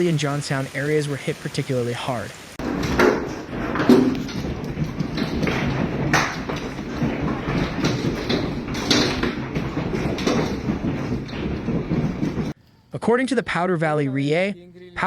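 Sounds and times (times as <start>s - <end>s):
hail and heavy rain pounding: 0.0s - 12.6s
sharp knocks and thuds: 2.6s - 12.6s.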